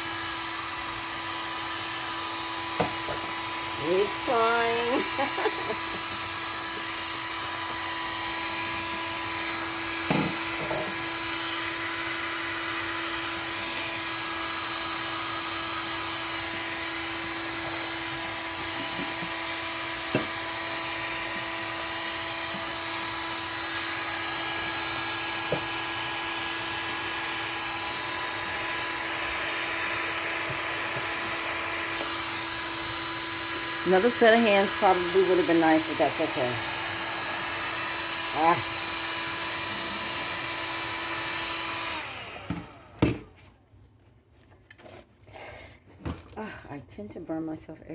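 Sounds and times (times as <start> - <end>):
heat gun blowing hum: 0.0 - 43.3.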